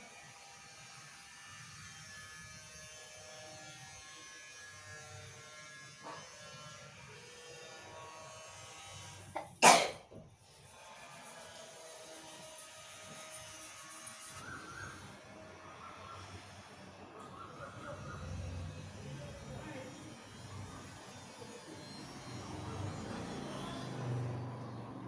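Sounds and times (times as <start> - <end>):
person sneezing: 9.4 - 10.0.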